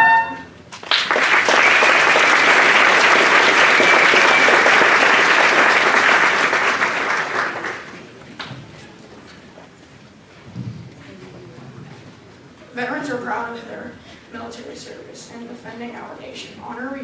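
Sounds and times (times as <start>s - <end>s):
audience clapping: 0.7s - 8.6s.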